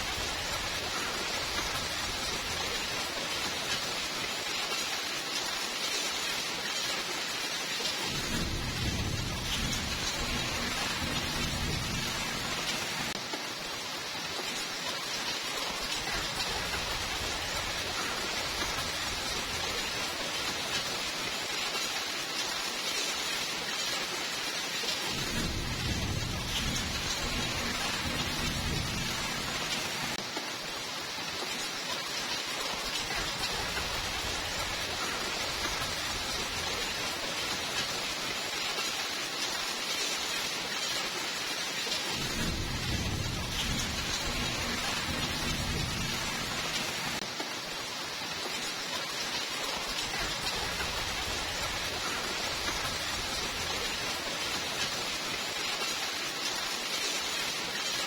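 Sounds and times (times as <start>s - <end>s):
heavy rainfall: 0.0s - 58.0s
low rumbles of thunder: 8.0s - 13.1s, 25.0s - 30.2s, 42.1s - 47.2s.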